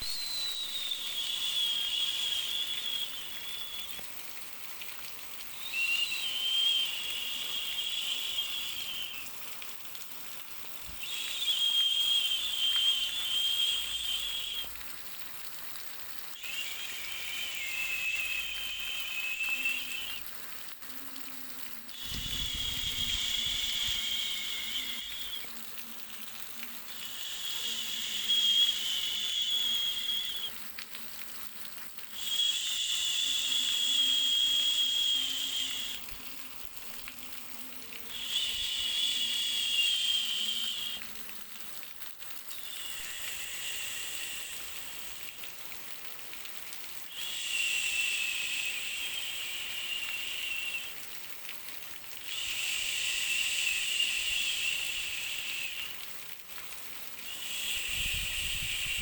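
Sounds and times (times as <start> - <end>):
high-pitched whistling buzz: 0.0 - 4.1, 5.5 - 9.3, 10.9 - 14.8, 16.4 - 20.3, 21.9 - 25.6, 26.9 - 30.6, 32.2 - 36.3, 38.1 - 41.2, 42.5 - 45.4, 47.1 - 51.0, 52.3 - 56.0, 57.3 - 59.0
steady background hiss: 0.0 - 15.6, 16.2 - 30.7, 32.1 - 41.7, 42.5 - 59.0.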